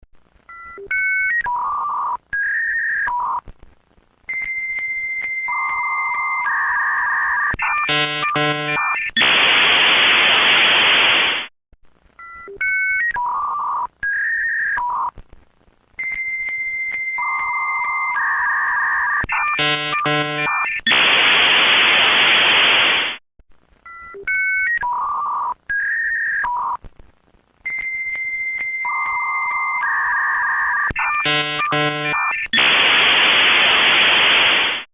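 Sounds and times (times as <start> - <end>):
dial-up modem handshake tones: 0.5 - 3.4, 4.3 - 9.3, 12.2 - 15.2, 16.0 - 21.0, 23.9 - 26.8, 27.6 - 32.8.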